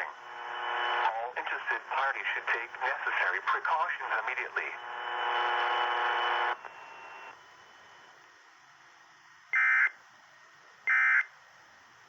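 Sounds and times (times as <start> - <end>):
steady buzzing tone: 0.0 - 8.2.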